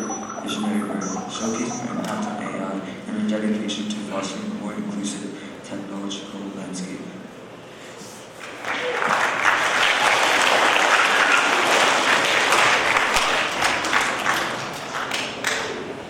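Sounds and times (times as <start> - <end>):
audience clapping: 8.4 - 15.8.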